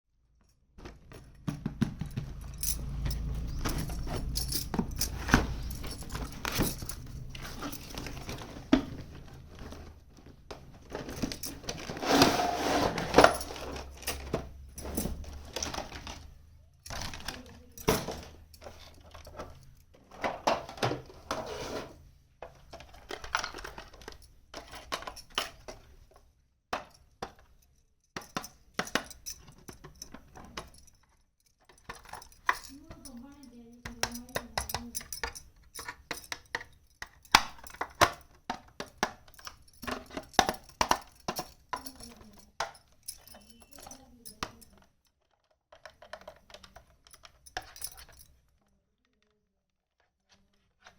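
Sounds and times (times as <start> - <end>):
toy pieces clicking and clinking: 31.7 - 48.2.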